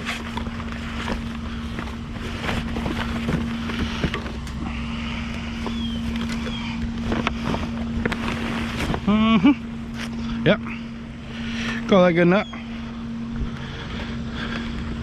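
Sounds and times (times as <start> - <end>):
vehicle engine droning: 0.0 - 15.0.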